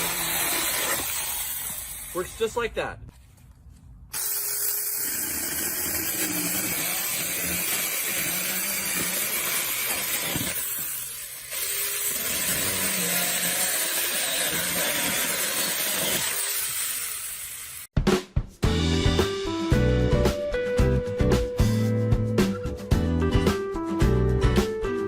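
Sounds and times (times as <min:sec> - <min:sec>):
mini chainsaw cutting branches: 0:00.0 - 0:02.4, 0:04.1 - 0:17.9.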